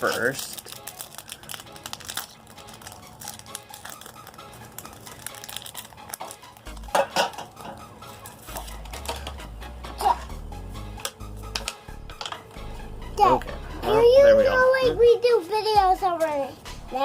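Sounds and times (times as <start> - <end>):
foil pack rustling and clicking: 0.0 - 9.4.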